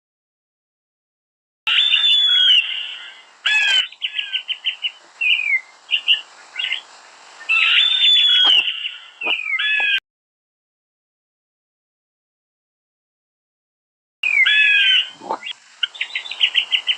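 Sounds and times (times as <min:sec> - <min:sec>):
bird chirps and whistles: 0:01.7 - 0:06.8, 0:07.4 - 0:10.0.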